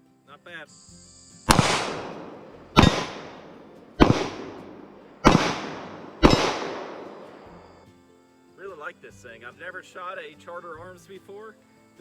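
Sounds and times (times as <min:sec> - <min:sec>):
revolver shots echoing: 0:01.5 - 0:07.5.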